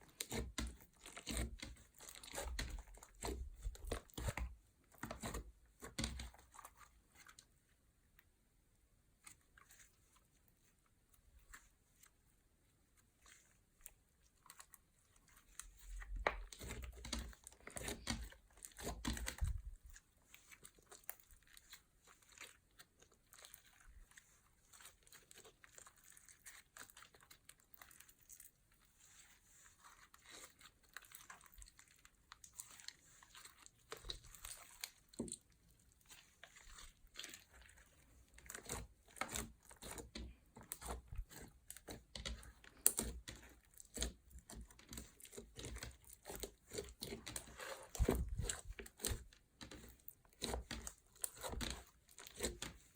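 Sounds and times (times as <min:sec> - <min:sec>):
slime squished in plastic bag: 0:15.4 - 0:52.9.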